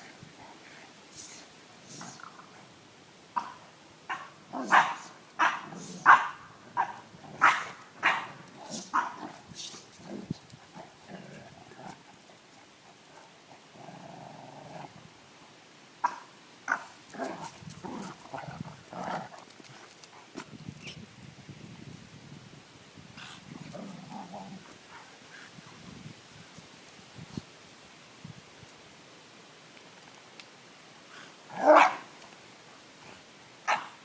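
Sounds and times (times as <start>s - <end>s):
dogs barking: 3.4s - 9.2s, 31.6s - 32.1s, 33.7s - 34.0s
dogs growling: 13.6s - 15.0s, 16.7s - 19.5s, 23.2s - 24.8s, 31.5s - 32.1s.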